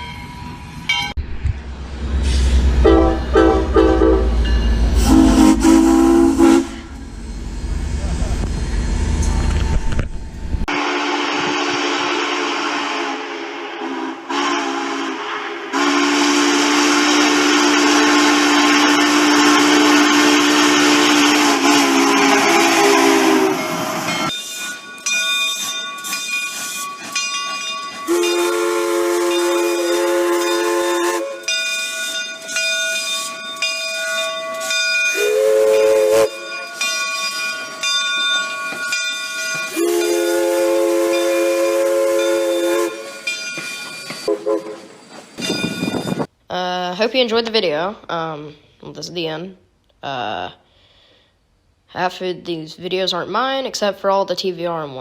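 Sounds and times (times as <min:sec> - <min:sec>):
loud steam hiss: 0:02.0 - 0:02.9
steam whistle low chord: 0:02.2 - 0:07.0, 0:10.7 - 0:23.8, 0:28.1 - 0:31.6, 0:35.2 - 0:36.6, 0:39.7 - 0:43.4.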